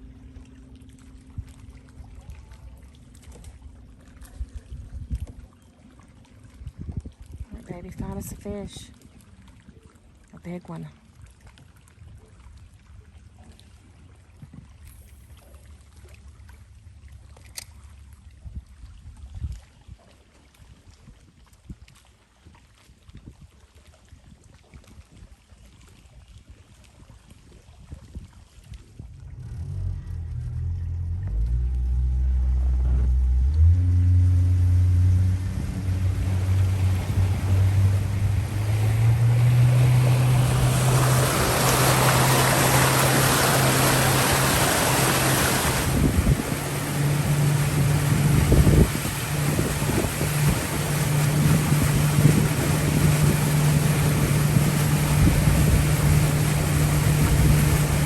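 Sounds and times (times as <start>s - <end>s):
rush of wind and water: 0.0s - 29.8s, 32.7s - 58.0s
outboard motor revving: 28.9s - 58.0s.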